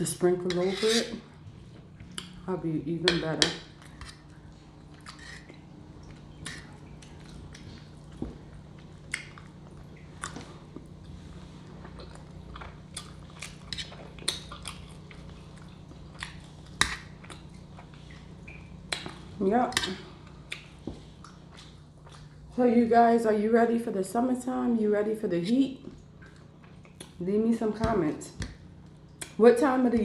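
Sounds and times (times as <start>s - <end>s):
steady low hum: 0.0s - 30.0s
person chewing food: 3.8s - 22.6s, 25.8s - 27.2s.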